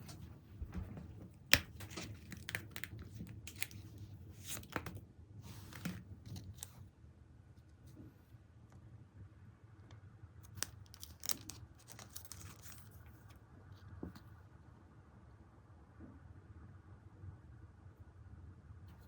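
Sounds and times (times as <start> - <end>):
packaging crinkling and rustling: 0.0 - 6.8, 10.4 - 13.4.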